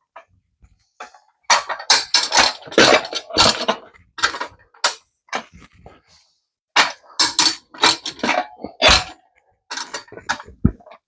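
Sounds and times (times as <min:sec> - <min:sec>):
metal clanking and rattling: 0:01.0 - 0:05.5, 0:06.8 - 0:11.0.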